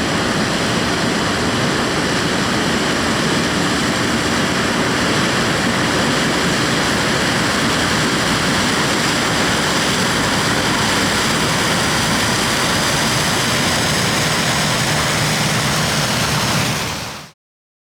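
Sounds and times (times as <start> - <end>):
harvesting machinery running: 3.2 - 17.3.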